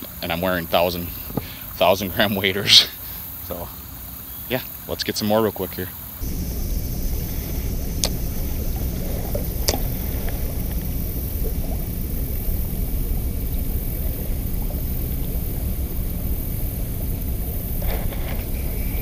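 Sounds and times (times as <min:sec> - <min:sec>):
river water flowing: 0:06.2 - 0:19.0.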